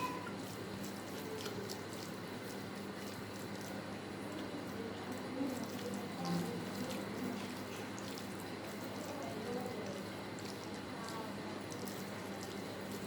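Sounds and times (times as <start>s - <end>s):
wet eating sounds: 0.0s - 13.0s.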